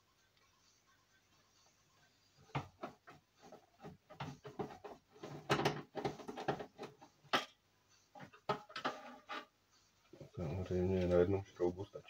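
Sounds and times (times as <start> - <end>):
hands rattling inside computer case: 2.8 - 7.1.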